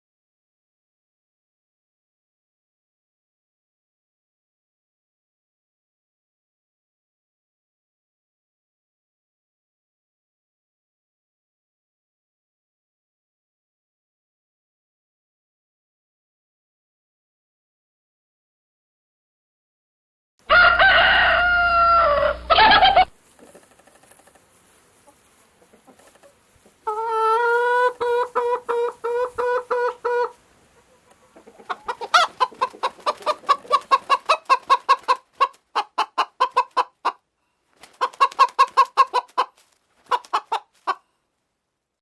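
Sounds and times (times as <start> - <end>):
long pulsing chicken call: 20.4 - 23.2, 26.8 - 30.4
rooster crowing: 20.4 - 23.2
chickens clucking rapidly: 22.1 - 24.5, 25.1 - 37.2, 37.8 - 41.0.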